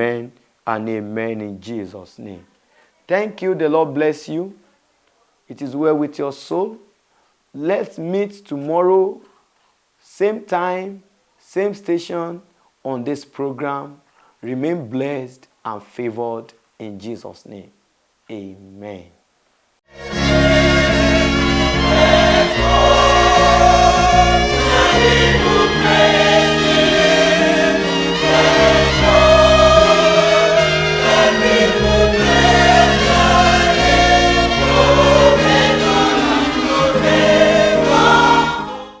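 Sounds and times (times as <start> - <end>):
bass line: 19.9 - 38.6
band playing: 19.9 - 38.8
gospel choir singing: 19.9 - 39.0.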